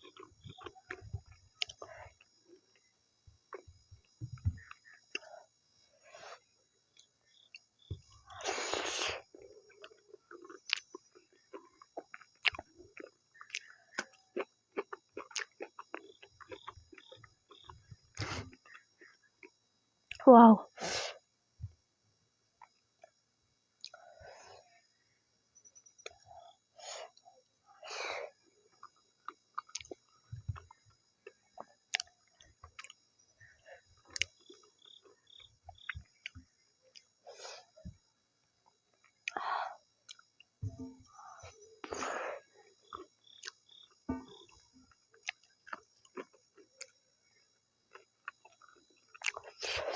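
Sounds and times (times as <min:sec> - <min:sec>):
person chewing and lip smacking: 0:00.0 - 0:02.3, 0:09.4 - 0:20.2, 0:23.8 - 0:24.0, 0:28.7 - 0:37.7, 0:40.0 - 0:42.1, 0:42.8 - 0:47.0, 0:47.9 - 0:49.9.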